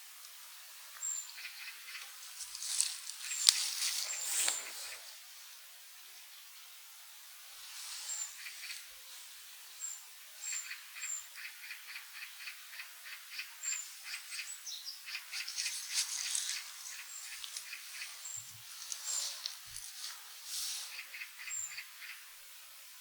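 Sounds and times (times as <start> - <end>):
rapid scratchy bird notes: 15.1 - 19.8.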